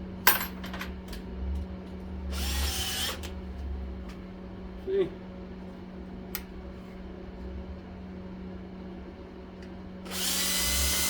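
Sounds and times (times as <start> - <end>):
low steady hum: 0.0 - 11.0
power tool whirring: 2.3 - 3.3, 10.1 - 11.0.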